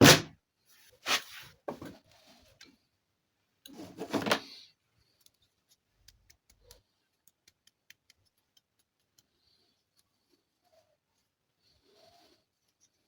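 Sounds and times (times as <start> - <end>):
light sharp clicks and taps: 5.2 - 10.2.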